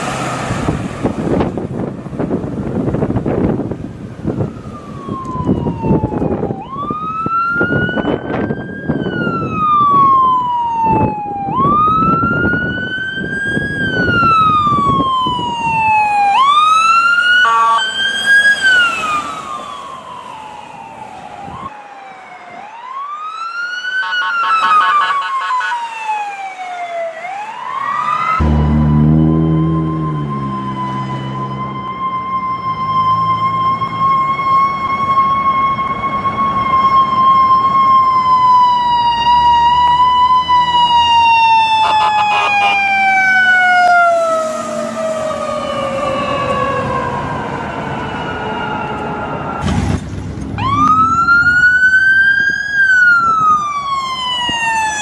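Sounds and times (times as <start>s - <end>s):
low traffic rumble: 0.0s - 55.0s
ambulance siren wailing: 0.6s - 55.0s
rapid stuttering siren tones: 24.0s - 25.7s, 41.7s - 43.0s.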